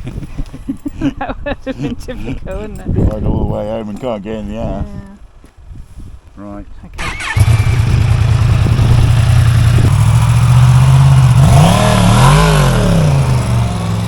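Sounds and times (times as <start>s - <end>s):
motorcycle engine idling: 7.0s - 11.4s
motorcycle engine revving: 7.0s - 14.0s.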